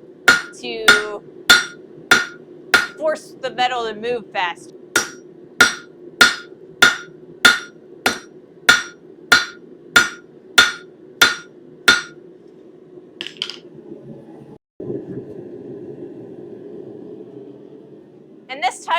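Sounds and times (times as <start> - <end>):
hammer striking steel on anvil: 0.3 - 3.0, 5.0 - 12.2.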